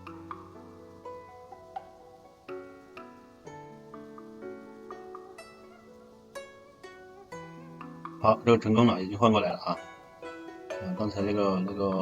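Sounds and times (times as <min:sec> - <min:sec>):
plucked string music: 0:00.0 - 0:12.0.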